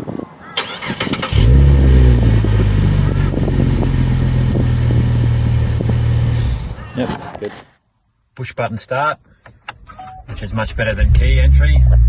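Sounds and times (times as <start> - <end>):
engine cranking: 0.6 - 4.7
car engine starting and idling: 0.6 - 6.9.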